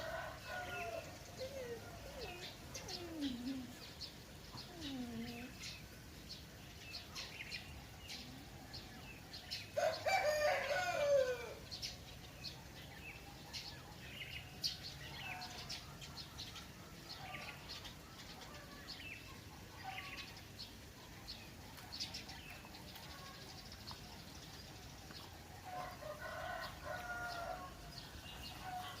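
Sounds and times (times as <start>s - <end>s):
small birds chirping: 0.0s - 29.0s
rooster crowing: 9.8s - 11.6s.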